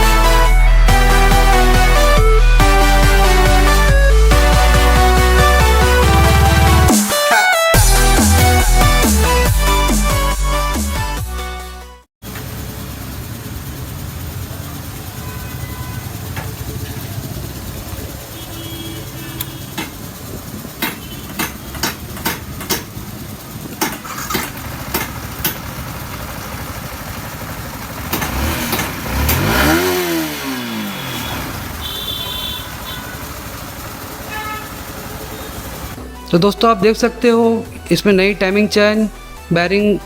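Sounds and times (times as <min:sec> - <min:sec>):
motorcycle engine running: 0:00.0 - 0:06.9, 0:12.2 - 0:36.0.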